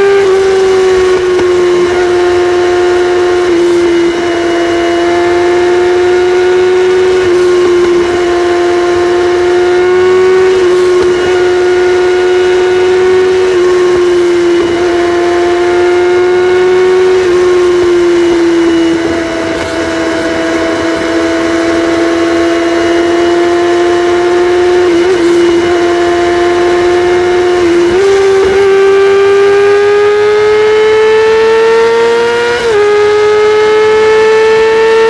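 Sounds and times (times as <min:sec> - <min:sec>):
motorcycle engine running high: 0:00.0 - 0:35.0.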